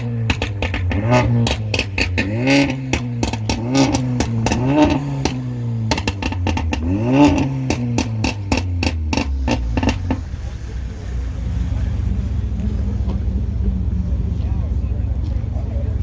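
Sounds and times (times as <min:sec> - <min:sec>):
sharp clicks and cracks: 0:00.0 - 0:10.2
car engine revving: 0:00.0 - 0:16.0.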